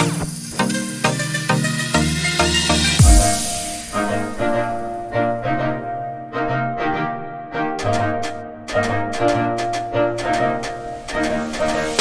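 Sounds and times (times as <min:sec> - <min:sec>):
bowed strings: 0:03.0 - 0:12.0.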